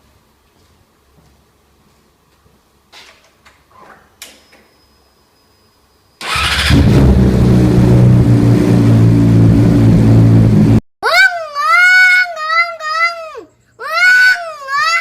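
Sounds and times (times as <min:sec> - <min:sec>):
motorcycle engine starting and idling: 0:06.2 - 0:10.8.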